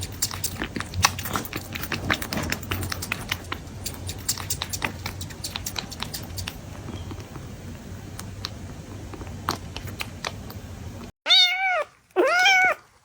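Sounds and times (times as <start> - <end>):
kitten meowing: 11.3 - 12.8.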